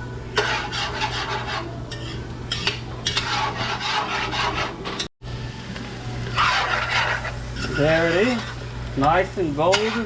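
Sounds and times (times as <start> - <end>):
spoon scraping a pot: 0.3 - 5.1, 6.3 - 8.6, 9.6 - 10.0
onions sizzling: 5.7 - 10.0.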